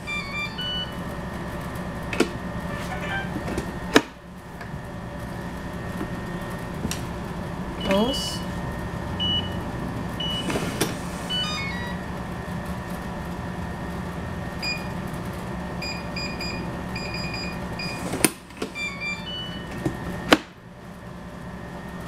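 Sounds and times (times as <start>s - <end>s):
quick keypad beeps: 0.1s - 1.0s, 11.3s - 12.0s.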